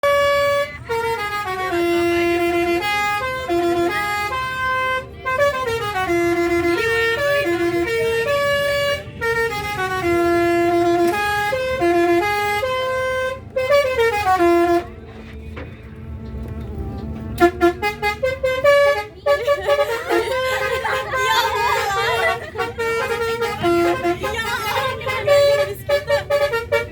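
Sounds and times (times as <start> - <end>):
musical air horn melody: 0.0 - 15.3, 17.3 - 26.9.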